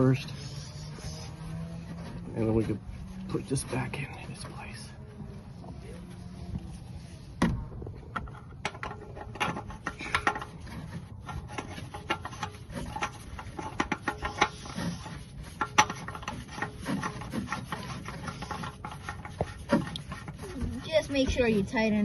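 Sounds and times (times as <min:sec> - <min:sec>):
handling clicks taps and rubbing: 0:07.4 - 0:22.0.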